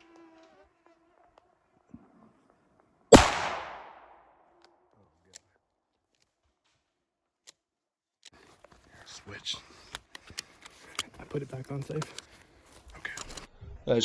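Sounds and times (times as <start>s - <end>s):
shotgun shot with echo: 3.1s - 4.2s.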